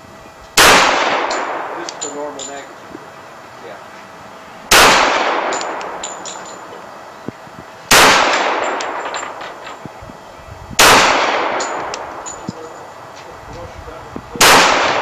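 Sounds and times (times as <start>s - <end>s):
pistol shots with echo: 0.6s - 2.4s, 4.7s - 6.3s, 7.9s - 9.5s, 10.8s - 12.3s, 14.4s - 15.0s.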